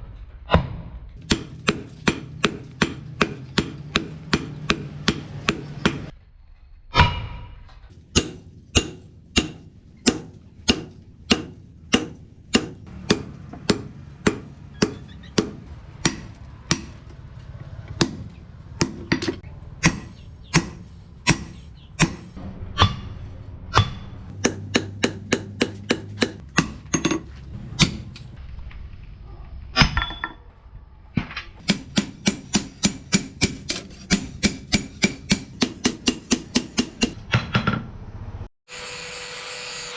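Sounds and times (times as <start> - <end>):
hammer striking steel on anvil: 1.2 - 6.1, 8.0 - 17.2, 17.9 - 23.0, 23.8 - 28.2, 31.6 - 37.2.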